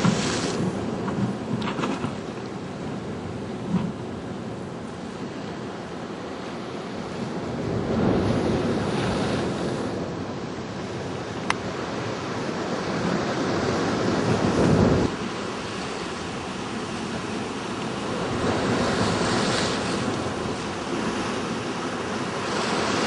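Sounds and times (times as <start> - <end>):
ocean surf washing in: 0.0 - 23.0
wind buffeting microphone: 6.8 - 23.0.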